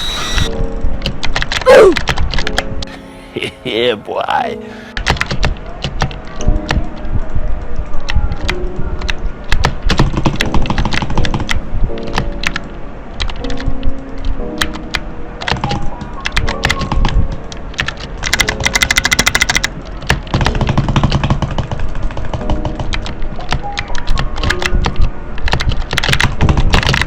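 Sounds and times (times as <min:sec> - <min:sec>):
background music: 0:00.0 - 0:07.4, 0:08.3 - 0:27.0
mechanical keyboard switches clicking: 0:14.6 - 0:17.2, 0:17.8 - 0:27.0.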